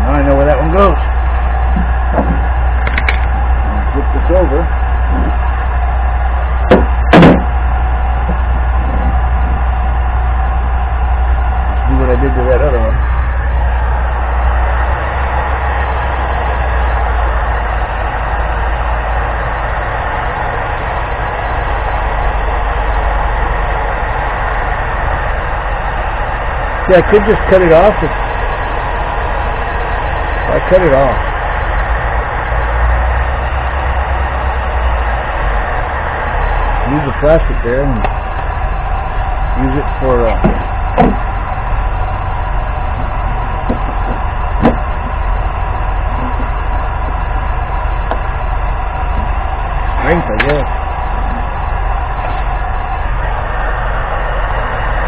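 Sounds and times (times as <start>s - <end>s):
low machine hum: 0.0s - 55.0s
steady loud rushing noise: 0.0s - 55.0s
sharp knock: 1.8s - 3.2s, 6.7s - 7.6s, 40.3s - 41.2s, 43.7s - 44.8s.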